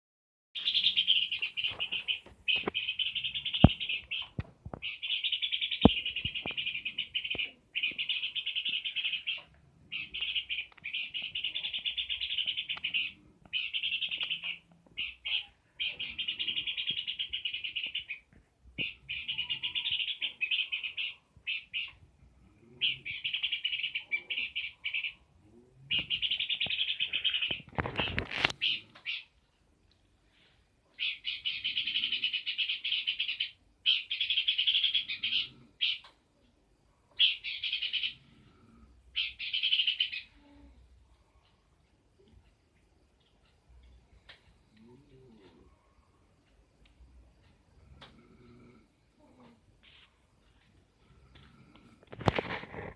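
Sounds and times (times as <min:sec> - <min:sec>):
bird singing: 0:00.6 - 0:22.0, 0:22.7 - 0:29.4, 0:30.9 - 0:36.2, 0:37.1 - 0:41.4.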